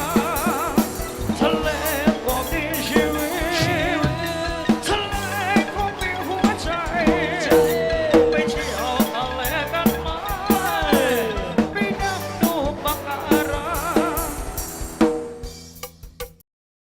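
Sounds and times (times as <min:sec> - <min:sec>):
steady drum beat: 0:00.0 - 0:16.4
vibrato melody line: 0:03.2 - 0:08.0.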